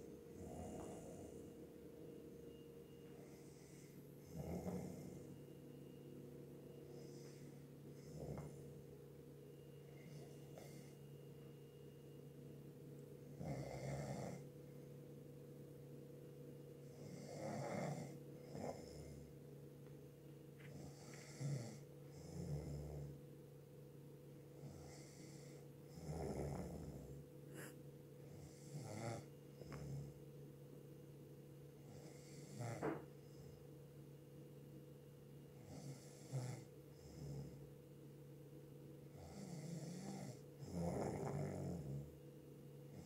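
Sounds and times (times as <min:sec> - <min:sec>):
steady low hum: 0:00.0 - 0:43.0
person snoring: 0:00.3 - 0:01.6, 0:03.2 - 0:05.4, 0:06.9 - 0:08.6, 0:13.4 - 0:14.5, 0:16.8 - 0:19.3, 0:20.7 - 0:23.2, 0:24.6 - 0:30.2, 0:31.8 - 0:33.6, 0:35.6 - 0:37.6, 0:39.1 - 0:42.1.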